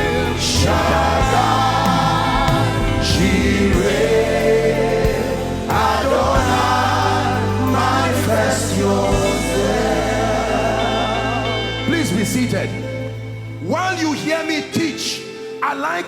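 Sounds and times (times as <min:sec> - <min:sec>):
choir singing: 0:00.0 - 0:12.3
steady bass: 0:00.0 - 0:14.1
keyboard chords: 0:00.0 - 0:16.0.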